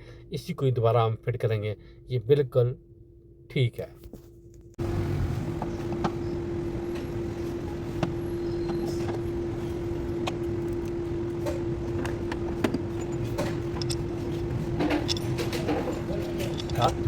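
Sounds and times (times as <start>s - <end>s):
steady machine hum: 0.0s - 17.0s
hand tool clicks and knocks: 13.4s - 14.2s, 14.9s - 17.0s.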